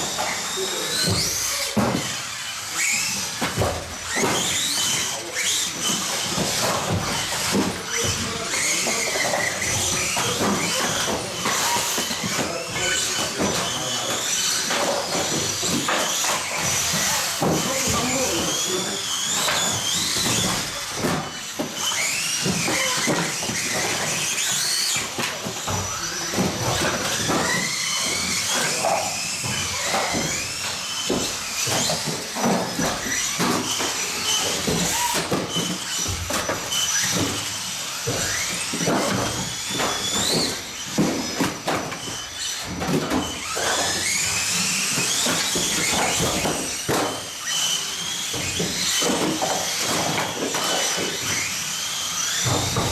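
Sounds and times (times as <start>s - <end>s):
electric rc car motors whining: 0.0s - 52.9s.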